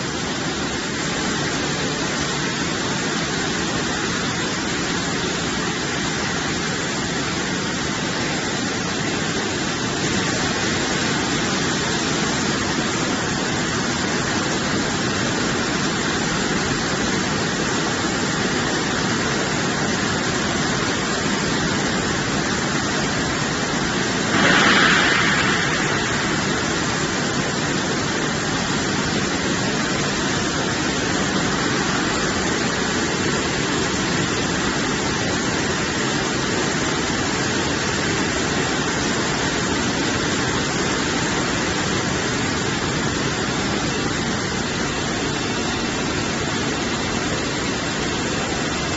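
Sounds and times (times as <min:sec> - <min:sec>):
spraying water: 0:00.0 - 0:48.9
machine noise: 0:22.9 - 0:38.9.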